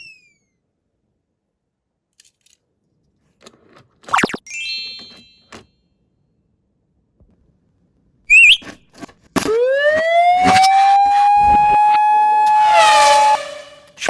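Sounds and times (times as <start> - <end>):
siren wailing: 9.5 - 13.9
loud warbling whistle: 10.3 - 13.8.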